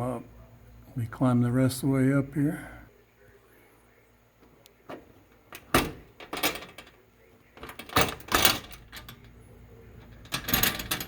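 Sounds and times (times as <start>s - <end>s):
metal shutters clanking: 5.5s - 7.0s, 7.6s - 9.3s, 10.0s - 11.0s.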